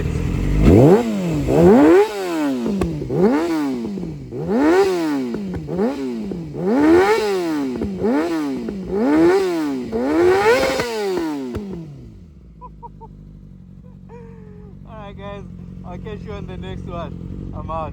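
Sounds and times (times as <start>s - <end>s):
motorcycle engine revving: 0.0s - 17.9s.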